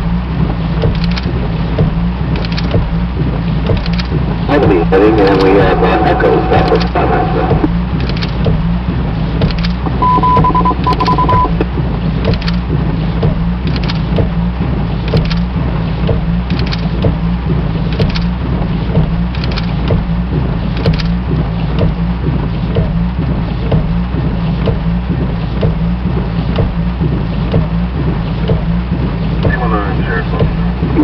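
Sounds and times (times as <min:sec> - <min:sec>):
faint regular ticks: 0:00.8 - 0:01.3, 0:13.6 - 0:14.3, 0:16.1 - 0:17.2, 0:19.0 - 0:20.0, 0:20.7 - 0:21.2
aircraft cockpit drone: 0:02.4 - 0:22.5, 0:27.9 - 0:31.0
high beep tone: 0:10.0 - 0:11.6.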